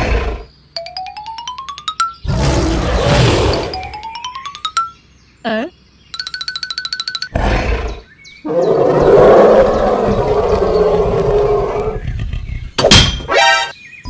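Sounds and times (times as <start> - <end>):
large animal roar: 0.0 - 0.5, 2.3 - 3.7, 7.4 - 12.6.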